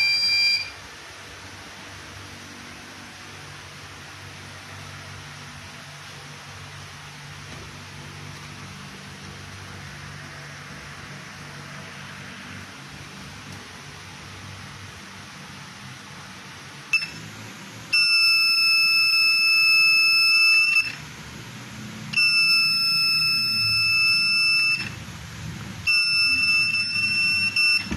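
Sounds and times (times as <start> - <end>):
door alarm buzzer beeping: 0.0 - 0.8, 16.9 - 17.3, 17.9 - 21.0, 22.1 - 25.0, 25.9 - 27.9.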